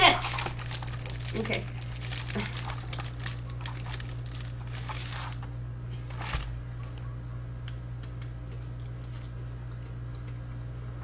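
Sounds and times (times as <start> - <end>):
plastic wrapper crinkling: 0.0 - 6.9
steady low hum: 0.0 - 11.0.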